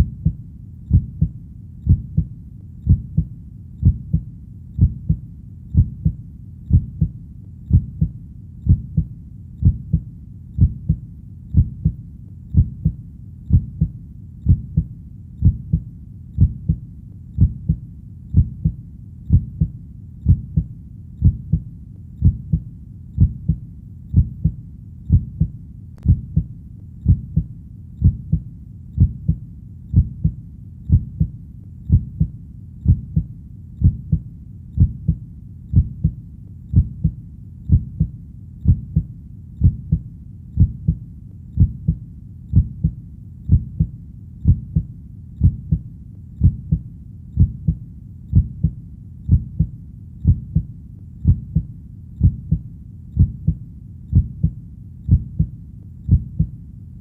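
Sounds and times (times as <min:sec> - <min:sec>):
heartbeat: 0:00.0 - 0:57.0.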